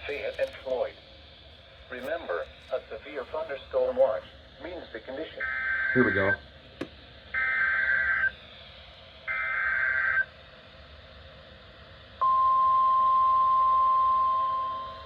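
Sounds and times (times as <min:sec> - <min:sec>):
steady warning alarm tone: 0:05.4 - 0:06.4, 0:07.4 - 0:08.4, 0:09.2 - 0:10.4, 0:12.2 - 0:15.0
screechy data burst: 0:09.3 - 0:10.3.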